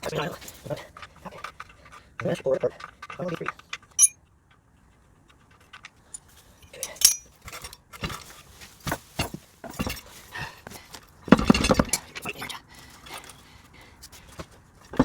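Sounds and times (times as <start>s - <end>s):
metal parts clicking and clinking: 2.8s - 4.2s, 5.3s - 8.3s
sharp ringing clink: 6.8s - 7.3s.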